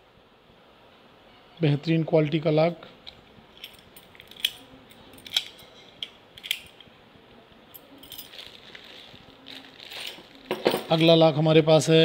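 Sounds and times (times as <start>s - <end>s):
padlock and keys clicking: 3.6s - 6.9s.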